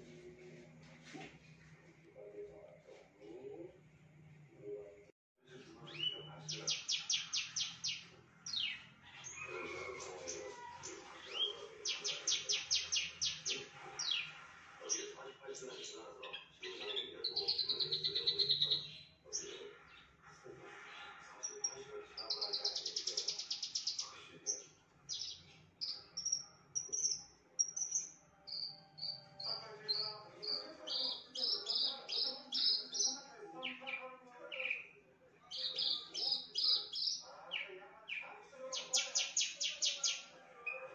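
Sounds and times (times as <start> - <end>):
bird singing: 5.6 - 20.2, 21.4 - 40.9.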